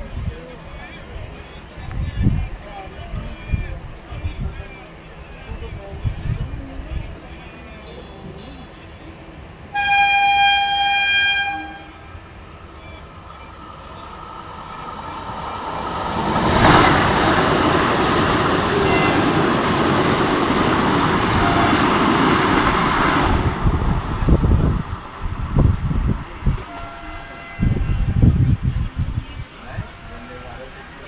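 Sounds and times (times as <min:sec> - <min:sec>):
train rushing past: 0:07.0 - 0:31.0
train horn: 0:09.7 - 0:12.2, 0:18.6 - 0:19.7, 0:21.3 - 0:22.0, 0:26.7 - 0:28.2.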